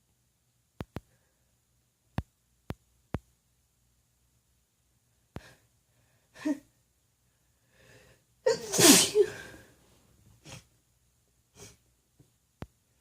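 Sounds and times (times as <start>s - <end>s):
woman sneezing: 8.5s - 9.6s.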